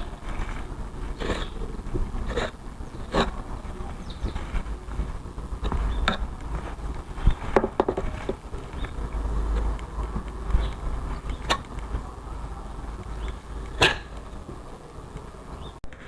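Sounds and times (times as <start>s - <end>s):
filler scraping on panel: 0.0s - 12.2s
low rumble: 0.0s - 15.7s.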